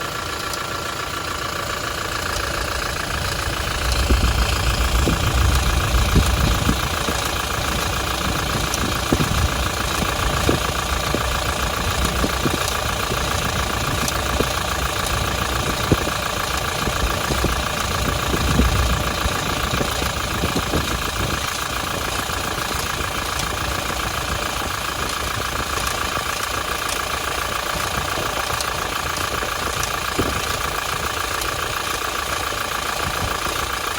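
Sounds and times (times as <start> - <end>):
diesel engine idling with rattle: 0.0 - 33.9
deep low rumble: 1.8 - 26.0.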